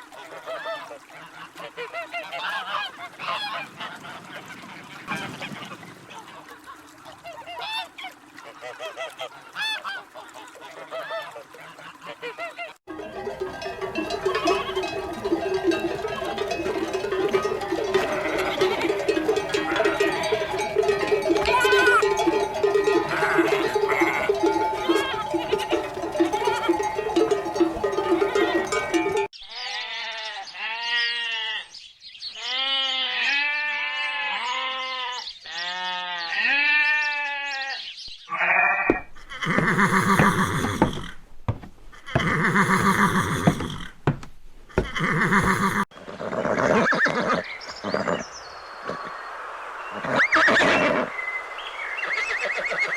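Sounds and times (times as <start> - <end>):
background music: 12.9 - 29.3
bell ringing: 12.9 - 29.3
harsh animal calls: 13.0 - 29.8, 38.3 - 41.2, 41.9 - 44.0, 44.8 - 48.2
sheep bleating: 13.4 - 31.7, 32.4 - 40.9, 42.0 - 43.6, 44.8 - 45.8.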